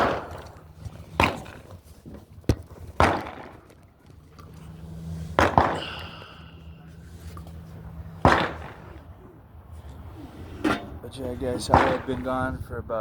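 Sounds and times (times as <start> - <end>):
gunshots with echo: 8.2 - 8.8, 11.7 - 12.2.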